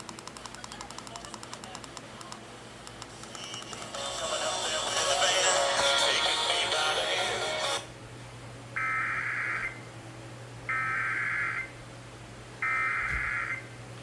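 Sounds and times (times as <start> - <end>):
radio music: 3.2 - 7.9.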